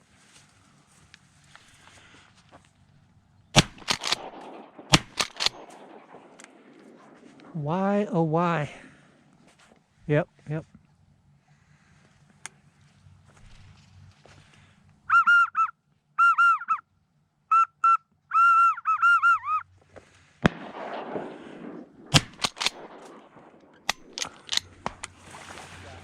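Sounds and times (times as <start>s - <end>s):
sharp clicks: 3.6s - 7.5s, 22.1s - 24.9s
rustling: 3.6s - 7.6s.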